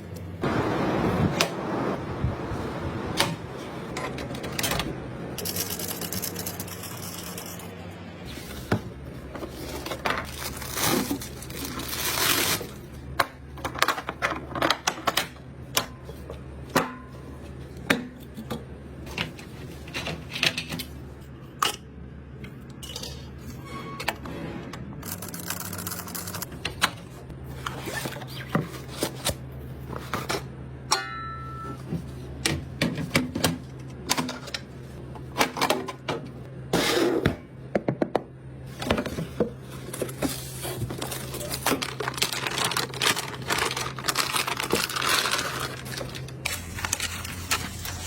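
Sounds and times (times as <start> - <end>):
scraping and rustling: 38.7 - 48.0.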